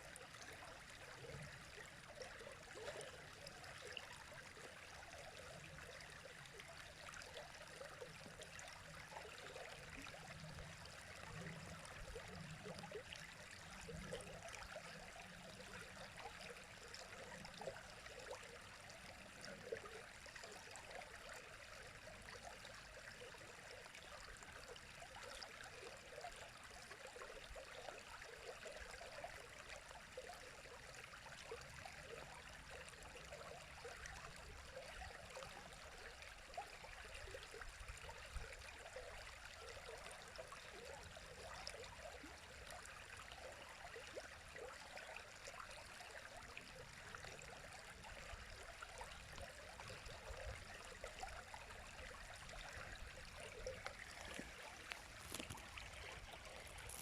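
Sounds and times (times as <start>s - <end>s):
small burbling splashes: 51.7s - 57.0s.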